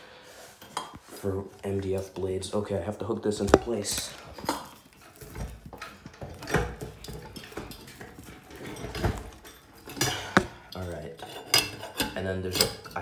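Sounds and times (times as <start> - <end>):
metal clinks and knocks: 3.5 - 13.0.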